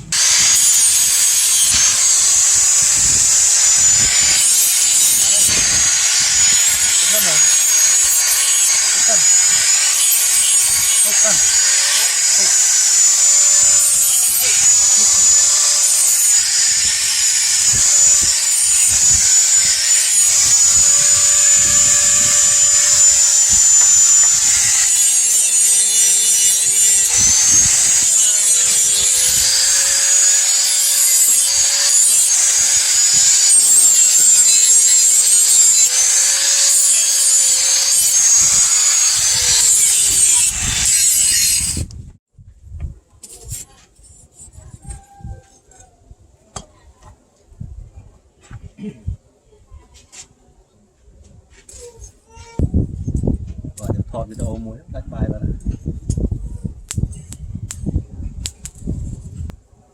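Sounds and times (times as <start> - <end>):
electric grinder grinding steel: 0.0 - 42.0.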